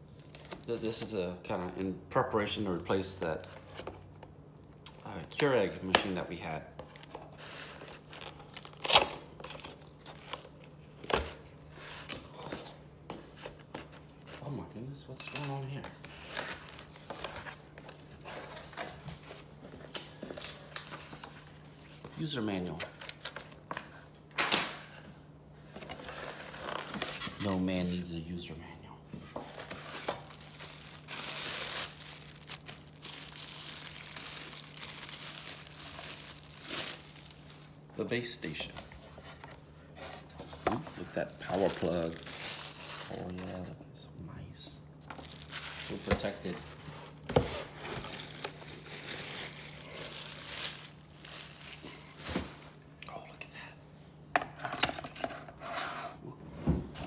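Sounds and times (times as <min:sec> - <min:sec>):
cardboard and packing crinkling: 0:00.2 - 0:01.2, 0:05.0 - 0:14.6, 0:15.8 - 0:24.1, 0:25.6 - 0:28.1, 0:29.2 - 0:43.7, 0:45.0 - 0:52.9.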